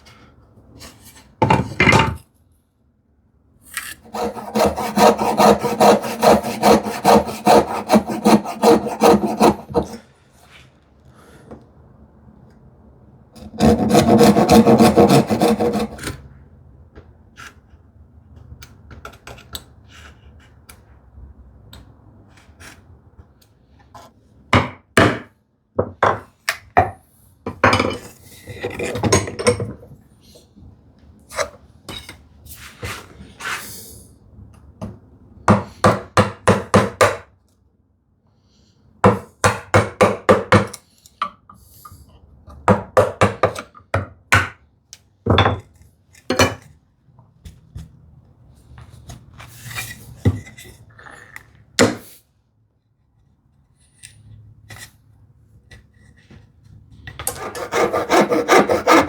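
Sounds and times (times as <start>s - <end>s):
hand saw cutting wood: 4.0s - 10.0s, 13.4s - 16.2s, 57.3s - 59.0s.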